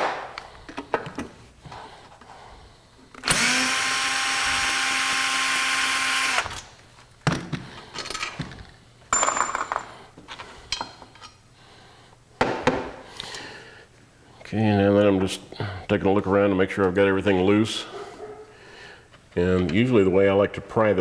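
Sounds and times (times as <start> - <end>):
power drill spinning out screw: 3.2 - 6.7
screws and tools clicking: 3.2 - 6.7.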